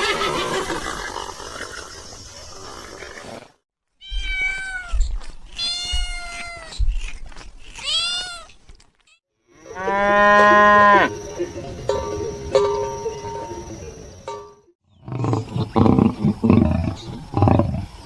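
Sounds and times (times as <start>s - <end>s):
cat meowing: 4.0s - 6.8s, 7.8s - 8.6s.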